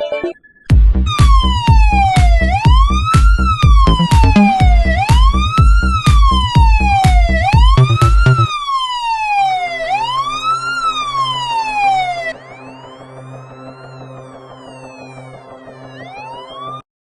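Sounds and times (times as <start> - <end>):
heavy drum beat: 0.7 - 8.5
police siren wailing: 1.1 - 16.8.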